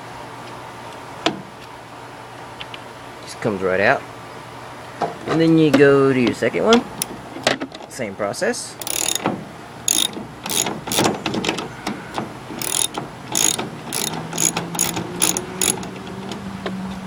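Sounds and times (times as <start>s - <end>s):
ratchet wrench clicking: 8.8s - 9.3s, 9.9s - 11.1s, 12.6s - 16.0s.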